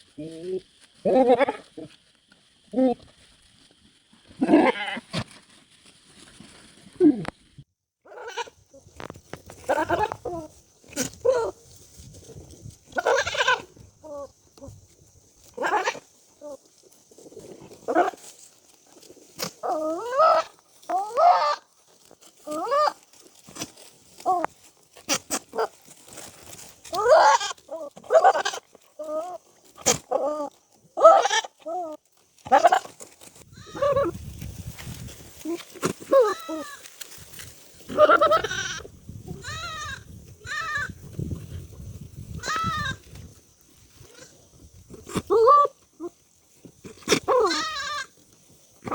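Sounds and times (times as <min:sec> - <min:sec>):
goat bleating: 0:01.0 - 0:01.7, 0:04.4 - 0:05.2, 0:08.1 - 0:08.6, 0:09.6 - 0:11.5, 0:12.9 - 0:13.7, 0:15.5 - 0:16.6, 0:19.4 - 0:21.7, 0:26.9 - 0:32.9, 0:33.5 - 0:34.1, 0:35.4 - 0:36.9, 0:37.9 - 0:41.0, 0:42.4 - 0:43.0, 0:44.0 - 0:44.4, 0:47.1 - 0:48.2.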